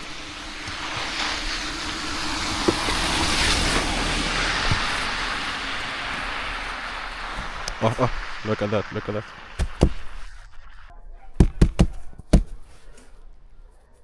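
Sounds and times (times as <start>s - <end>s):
vehicle driving past: 0.0s - 8.4s.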